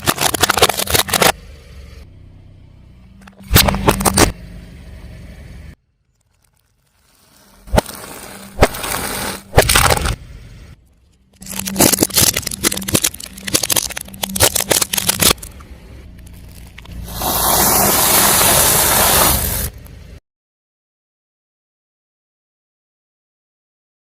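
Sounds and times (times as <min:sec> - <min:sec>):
crunching and crackling: 0:00.0 - 0:01.4, 0:05.9 - 0:10.2, 0:11.2 - 0:19.9
objects crushed under car tyre: 0:00.0 - 0:01.4, 0:06.1 - 0:10.2, 0:11.4 - 0:15.6.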